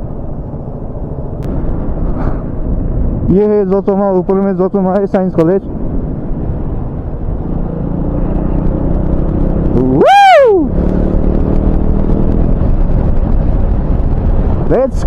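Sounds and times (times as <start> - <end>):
motorcycle running at speed: 0.0 - 15.0
wind noise on microphone: 0.0 - 15.0
rider whooping: 9.7 - 10.8.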